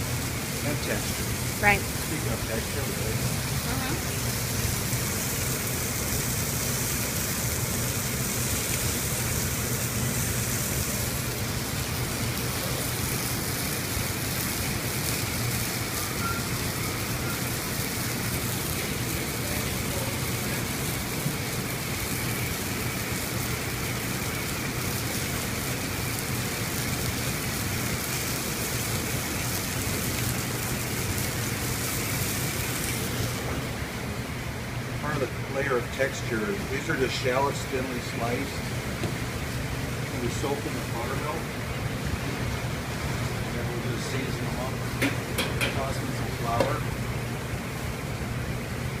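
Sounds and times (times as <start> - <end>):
bright hiss: 0.0 - 33.7.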